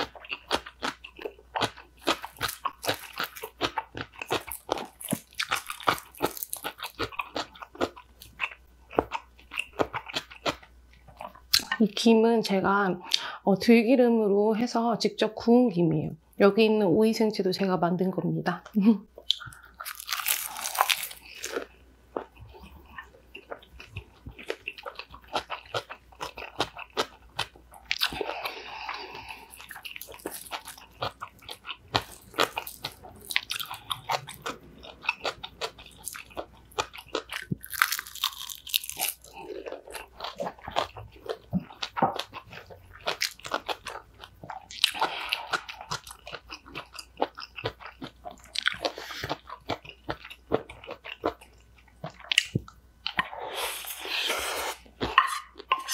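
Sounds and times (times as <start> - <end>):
crisp cucumber crunches: 19.8 - 21.7, 36.0 - 40.9.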